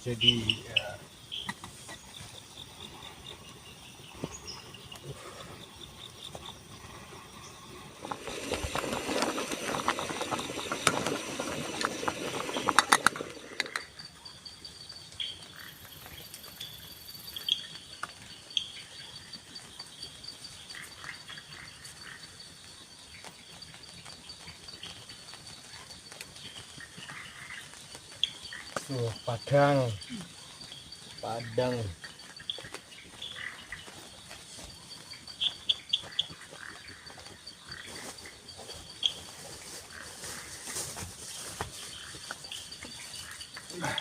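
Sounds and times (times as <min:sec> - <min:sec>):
rustling: 0:00.0 - 0:13.9, 0:23.0 - 0:44.0
frogs calling: 0:00.0 - 0:44.0
high insect trill: 0:00.0 - 0:44.0.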